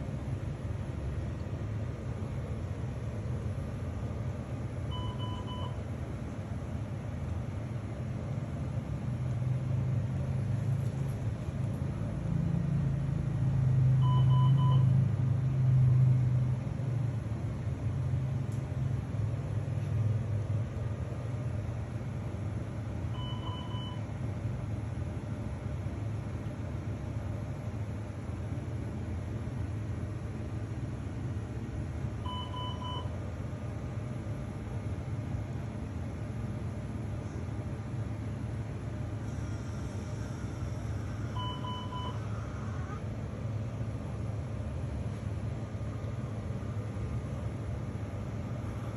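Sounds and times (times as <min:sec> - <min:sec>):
low steady rumble: 0:00.0 - 0:48.9
electronic device beep: 0:14.0 - 0:14.9.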